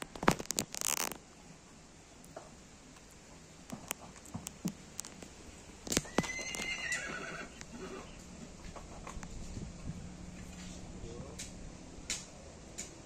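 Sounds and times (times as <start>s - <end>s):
horse whinnying: 6.0s - 8.2s.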